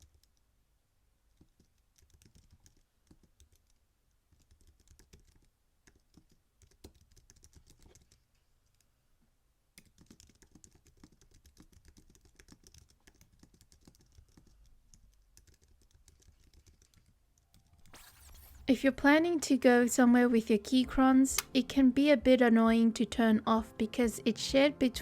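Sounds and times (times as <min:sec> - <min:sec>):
typing on a keyboard: 0:00.0 - 0:00.4, 0:01.3 - 0:08.9, 0:09.8 - 0:17.9.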